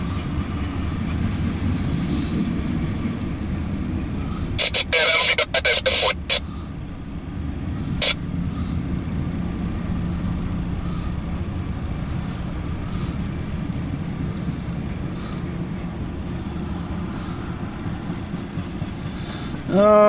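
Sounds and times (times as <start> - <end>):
freight train rumbling past: 0.0 - 20.0
steady hum: 3.5 - 17.8.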